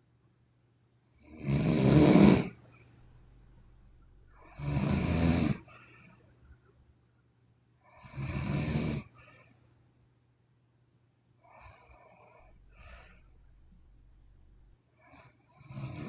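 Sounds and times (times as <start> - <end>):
woman snoring: 1.3 - 2.6, 4.4 - 5.7, 8.0 - 9.2, 11.5 - 14.7
soft breaths: 1.8 - 9.9, 11.3 - 16.0.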